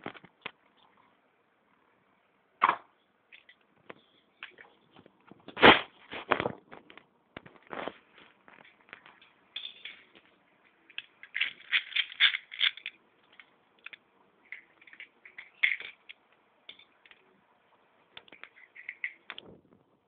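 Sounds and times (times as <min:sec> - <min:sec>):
spinning top parts clattering: 0:09.1 - 0:10.2, 0:10.8 - 0:17.3, 0:18.2 - 0:19.4.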